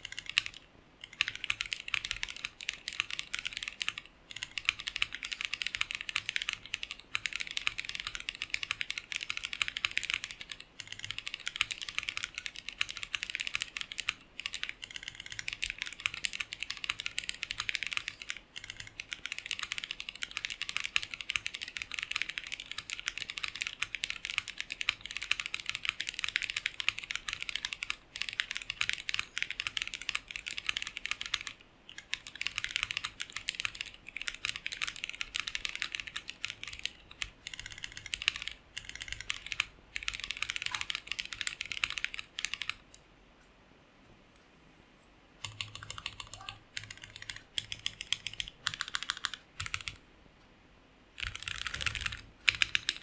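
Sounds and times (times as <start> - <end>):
mechanical keyboard typing: 0.0 - 43.0, 45.4 - 50.0, 51.2 - 53.0.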